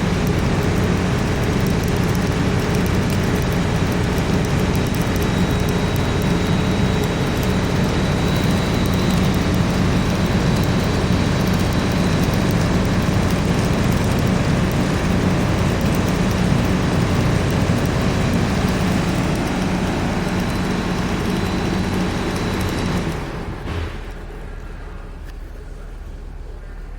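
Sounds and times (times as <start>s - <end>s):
air conditioner fan rushing air: 0.0s - 26.9s
faint high whine: 0.0s - 26.9s
low motor hum: 0.0s - 26.9s.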